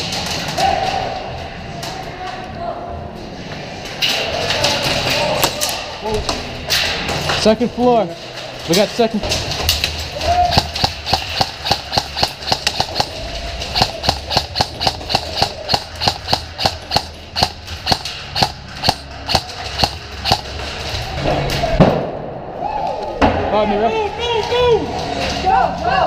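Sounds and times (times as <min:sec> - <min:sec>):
airsoft gun shots: 0:10.5 - 0:13.2, 0:13.8 - 0:20.5.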